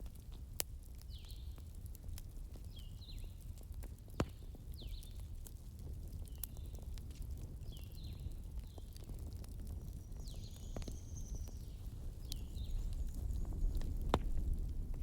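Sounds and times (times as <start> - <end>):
wood fire crackling: 0.0 - 15.0
faint high chirps and whistles: 10.0 - 13.8.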